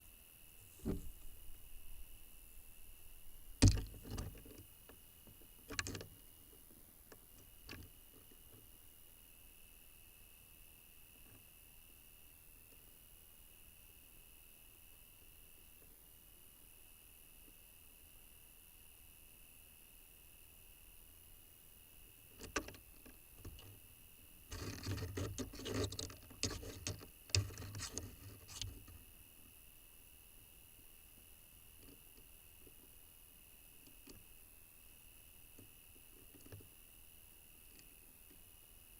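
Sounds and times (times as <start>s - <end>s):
faint steady high whine: 0.0s - 38.9s
birds scuffling in nest box: 0.6s - 1.9s, 3.3s - 4.7s, 24.5s - 29.0s
sharp knock in nest box: 0.8s - 1.3s, 3.6s - 4.3s.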